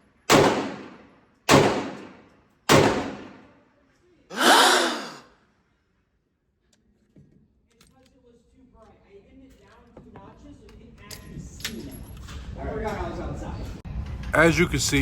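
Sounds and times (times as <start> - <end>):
pistol shots with ringing tail: 0.3 - 3.4
loud breathy falling sound: 4.3 - 5.2.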